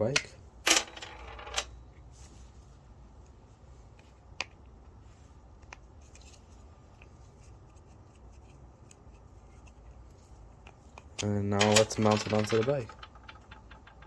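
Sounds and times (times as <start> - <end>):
low steady room hum: 0.0 - 14.0.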